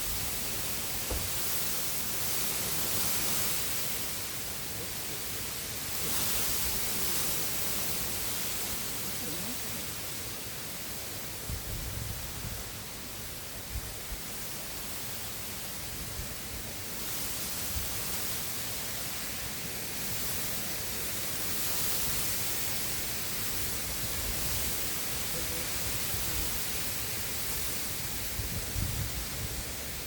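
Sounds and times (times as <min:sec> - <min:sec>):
wind: 0:00.0 - 0:30.0
wind buffeting microphone: 0:27.6 - 0:30.0.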